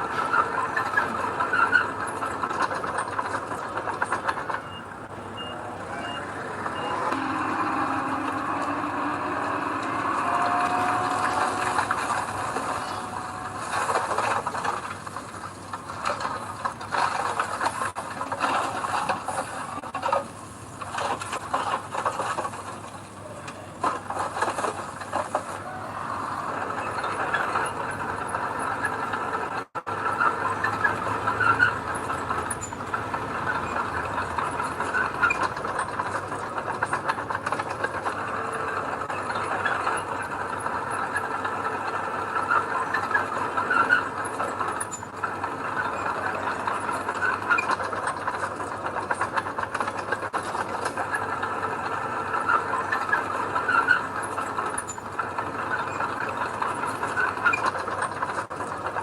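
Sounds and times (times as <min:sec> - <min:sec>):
metal rattling and clanking: 0:00.0 - 0:05.5
heavy machinery engine: 0:00.0 - 0:59.0.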